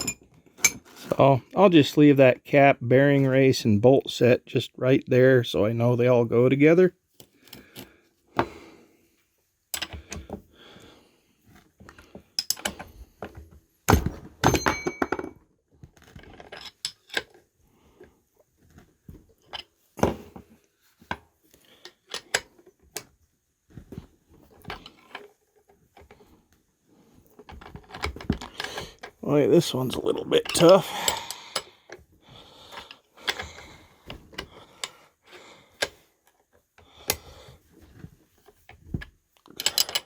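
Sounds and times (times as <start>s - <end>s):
metal parts clinking and knocking: 0.0s - 1.2s, 9.7s - 10.4s, 12.3s - 13.3s, 13.9s - 15.4s, 16.0s - 17.4s, 21.8s - 22.5s, 27.4s - 31.9s, 39.4s - 40.0s
ringing metal clank: 14.4s - 15.3s.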